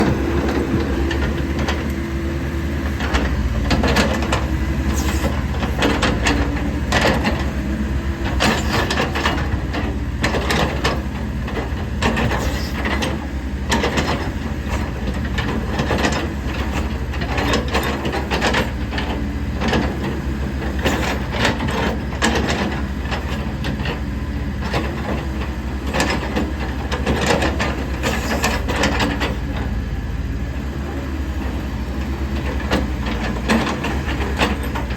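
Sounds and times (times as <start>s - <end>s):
excavator diesel engine running: 0.0s - 34.9s
metallic clanks and knocks: 8.2s - 24.0s, 32.4s - 34.9s.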